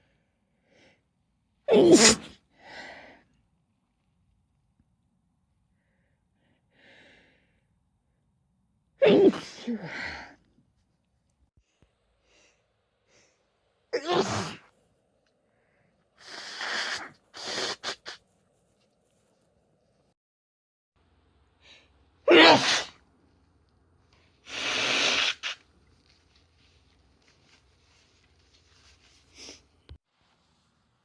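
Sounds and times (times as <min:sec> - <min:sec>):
woman sneezing: 0:01.7 - 0:02.4, 0:09.0 - 0:10.0, 0:14.0 - 0:14.6, 0:22.3 - 0:22.9
nose blowing: 0:16.2 - 0:18.2, 0:24.5 - 0:25.6.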